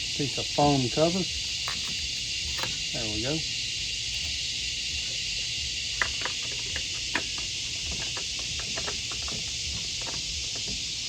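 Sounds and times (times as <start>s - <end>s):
steady high hiss: 0.0s - 11.0s
plastic parts clicking: 1.1s - 3.0s, 6.0s - 10.8s.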